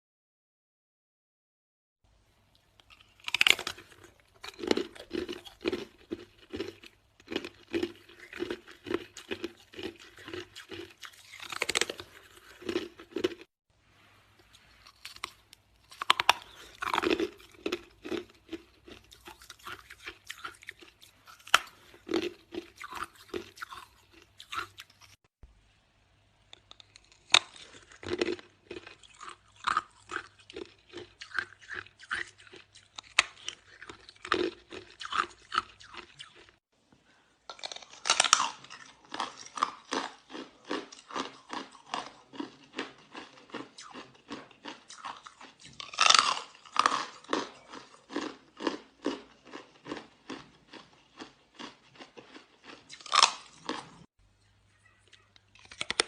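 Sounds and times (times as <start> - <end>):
ice being chewed: 2.8 - 13.5, 14.4 - 25.2, 26.6 - 36.6, 37.5 - 54.1, 54.8 - 56.0.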